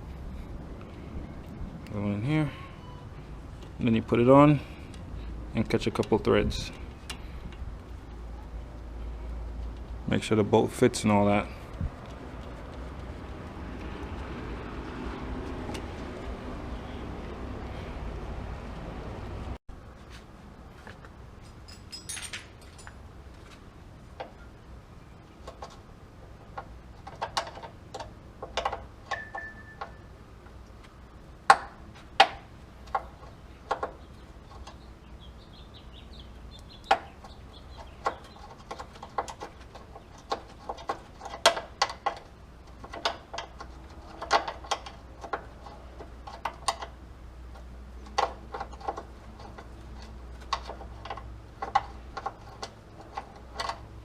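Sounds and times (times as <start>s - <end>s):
metal tools clinking and knocking: 21.4s - 23.1s, 28.4s - 30.1s.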